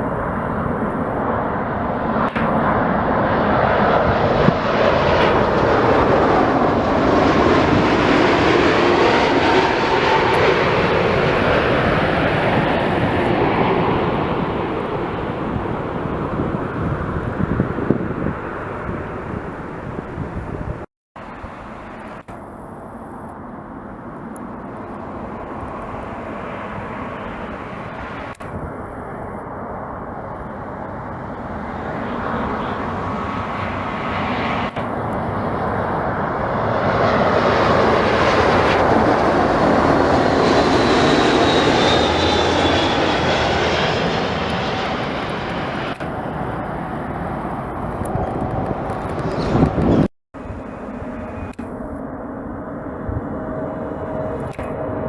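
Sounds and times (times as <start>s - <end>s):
jet engines roaring: 0.0s - 55.0s.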